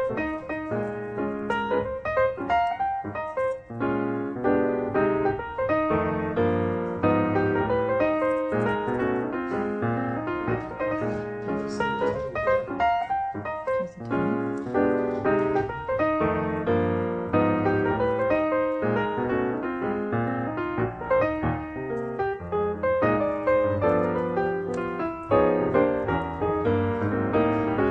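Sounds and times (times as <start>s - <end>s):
lively piano music: 0.0s - 27.9s.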